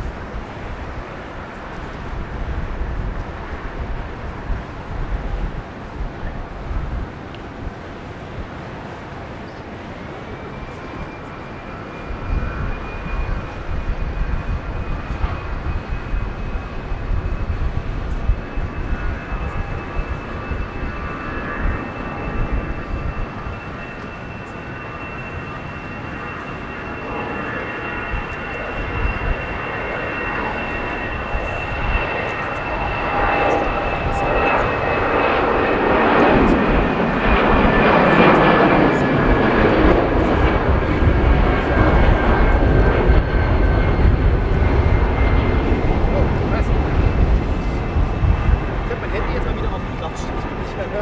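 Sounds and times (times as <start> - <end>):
jet engines running: 0.0 - 51.0.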